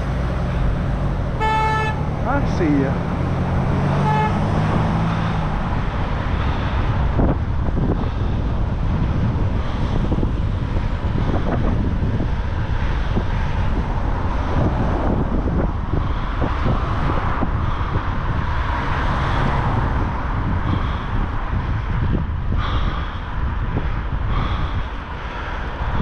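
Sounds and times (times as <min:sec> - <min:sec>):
person breathing heavily: 0:17.5 - 0:18.3, 0:19.1 - 0:26.0.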